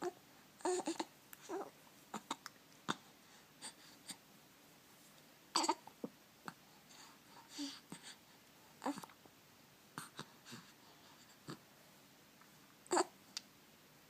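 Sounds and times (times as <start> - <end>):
baby grunting and squeaking: 0.0 - 3.0, 5.5 - 5.9, 12.9 - 13.2.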